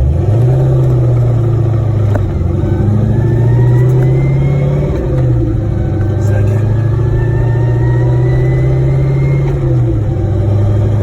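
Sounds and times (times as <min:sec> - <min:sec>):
car engine drone: 0:00.0 - 0:11.0
gearbox whining: 0:00.0 - 0:11.0.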